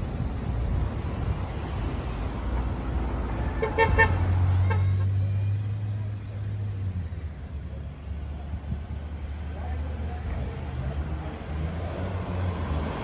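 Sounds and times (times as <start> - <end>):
street traffic: 0.0 - 13.0
car horn toots: 3.6 - 5.0
car engine humming past: 10.0 - 13.0.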